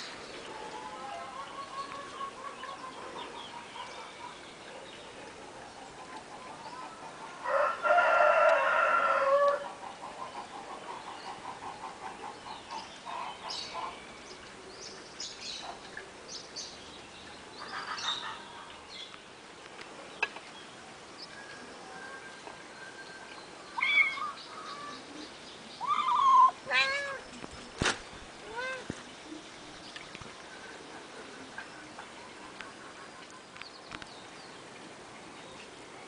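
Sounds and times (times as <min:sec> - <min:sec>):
small birds chirping: 0:22.4 - 0:36.0
kittens meowing: 0:25.8 - 0:27.2.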